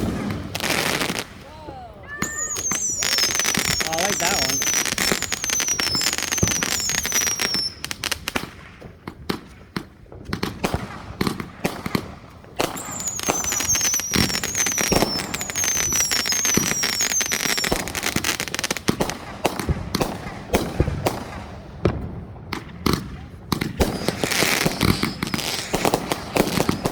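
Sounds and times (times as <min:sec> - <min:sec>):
fireworks crackling and popping: 0:00.0 - 0:26.9
falling whistles: 0:02.1 - 0:07.9, 0:12.8 - 0:18.0.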